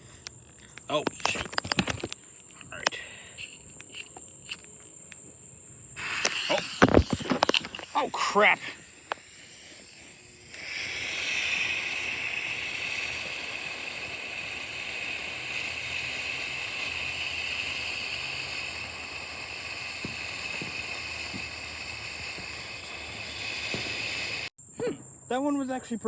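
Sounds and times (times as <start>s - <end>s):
firework fountain hissing: 0.0s - 24.6s
faint pops: 6.0s - 14.4s.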